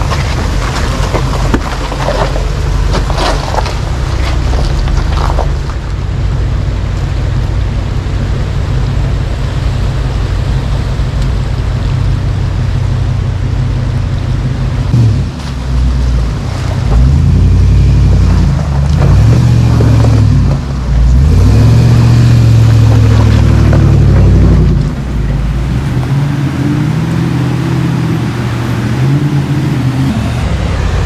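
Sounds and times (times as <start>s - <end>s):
pickup truck engine revving: 14.3s - 31.0s.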